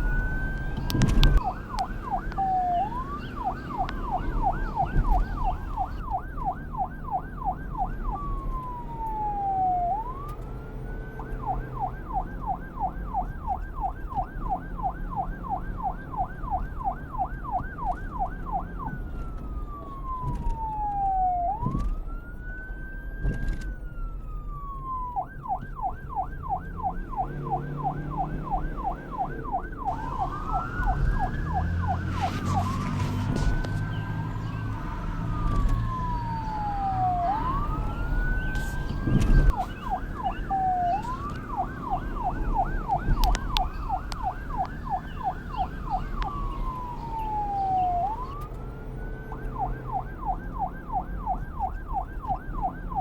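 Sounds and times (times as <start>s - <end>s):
low traffic rumble: 0.0s - 53.0s
police siren: 0.0s - 53.0s
second wailing siren: 0.0s - 53.0s.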